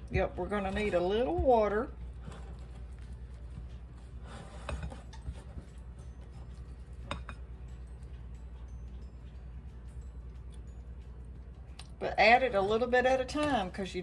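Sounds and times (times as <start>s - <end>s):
utensil stirring thick icing: 0.0s - 7.1s
low steady hum: 0.0s - 14.0s
utensil clinking against bowl: 4.6s - 8.1s.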